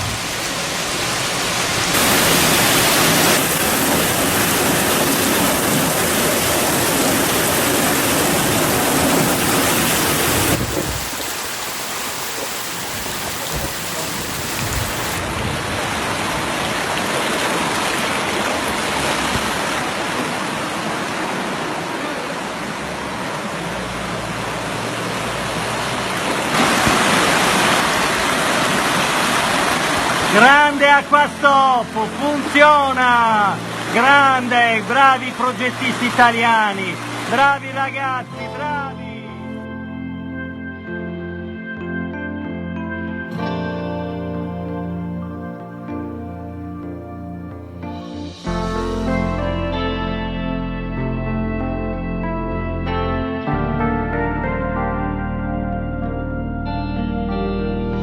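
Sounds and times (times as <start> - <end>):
floodwater rushing: 0.0 - 39.6.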